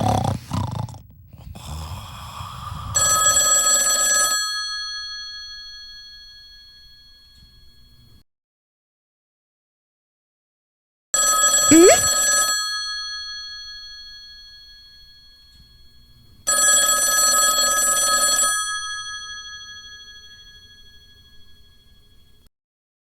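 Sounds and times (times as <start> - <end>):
alarm clock bell ringing: 2.9 - 7.8, 11.2 - 22.5.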